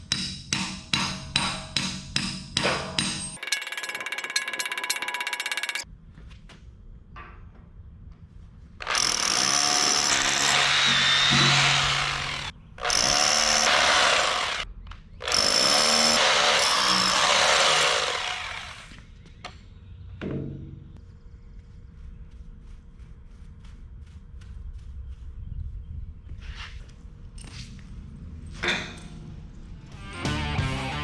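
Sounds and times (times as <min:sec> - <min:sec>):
power drill grinding into concrete: 0:08.8 - 0:14.6, 0:15.2 - 0:19.0.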